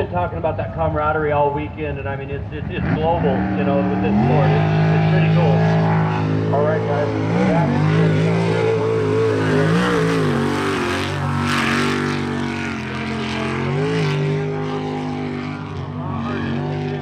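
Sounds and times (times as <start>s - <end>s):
boat engine running hard: 0.0s - 17.0s.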